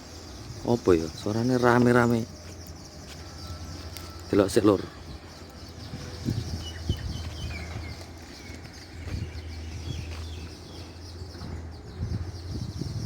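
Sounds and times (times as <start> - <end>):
birds chirping and whistling: 0.0 - 13.0.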